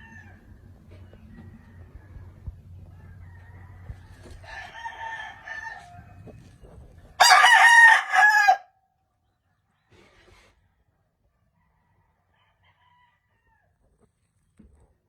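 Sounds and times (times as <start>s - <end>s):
distant rooster crowing: 0.0s - 6.4s, 7.2s - 8.8s, 11.6s - 13.8s
loud close rooster crow: 3.2s - 6.2s, 7.2s - 8.7s.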